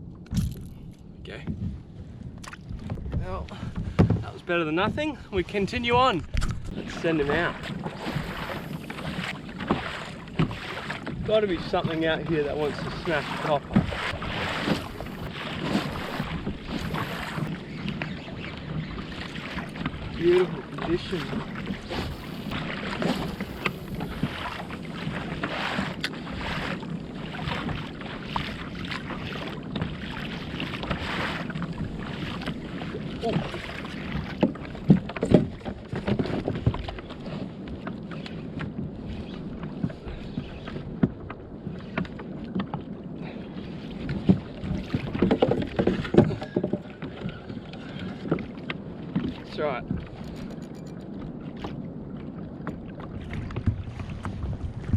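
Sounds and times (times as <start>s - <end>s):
water splashing against a hull: 0.0s - 54.9s
wind buffeting microphone: 0.0s - 54.9s.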